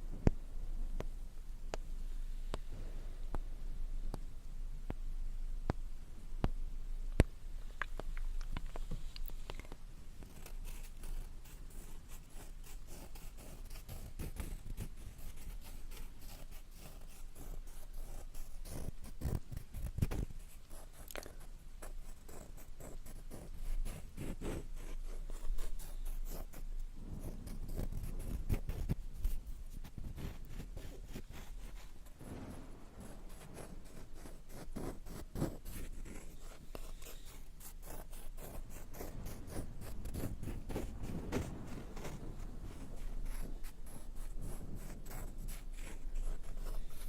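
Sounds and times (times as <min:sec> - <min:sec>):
soft scratching and tapping: 0:06.4 - 0:47.0
rubbing sounds: 0:08.7 - 0:47.0.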